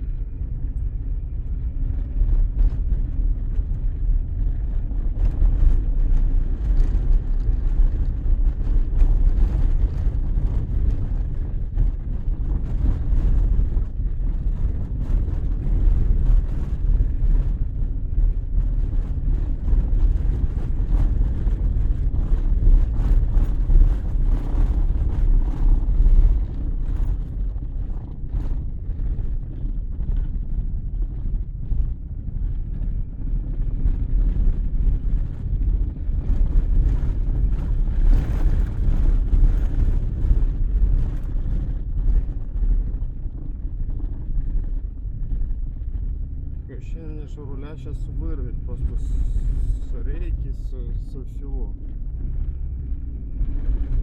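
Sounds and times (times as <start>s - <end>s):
car road and engine rumble: 0.0s - 54.0s.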